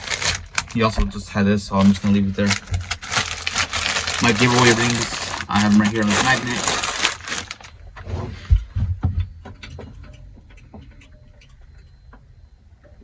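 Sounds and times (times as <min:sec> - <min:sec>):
dull thumps: 0:06.6 - 0:11.0.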